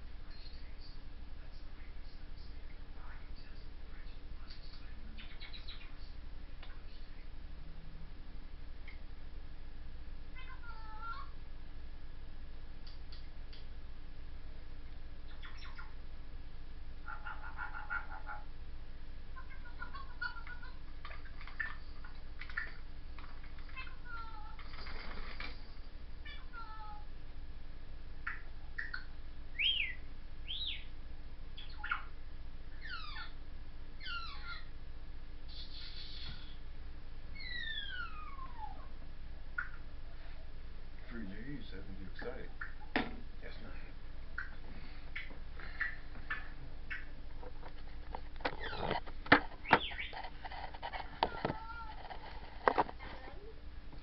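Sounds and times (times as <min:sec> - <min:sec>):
parrot chirping and squeaking: 0:04.6 - 0:06.1, 0:15.3 - 0:16.0, 0:19.4 - 0:22.9, 0:23.5 - 0:25.0, 0:26.2 - 0:27.0, 0:28.2 - 0:30.9, 0:31.6 - 0:33.4, 0:34.0 - 0:34.7, 0:35.5 - 0:36.6, 0:37.3 - 0:38.9, 0:45.2 - 0:47.6, 0:48.5 - 0:52.3
parrot whistling: 0:28.3 - 0:30.9, 0:34.0 - 0:34.7, 0:35.5 - 0:36.6, 0:37.3 - 0:38.9.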